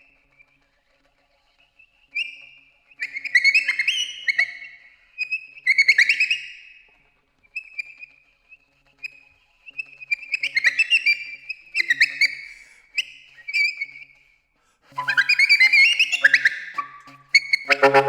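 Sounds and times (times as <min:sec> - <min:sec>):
alto saxophone squealing: 0:14.9 - 0:18.0.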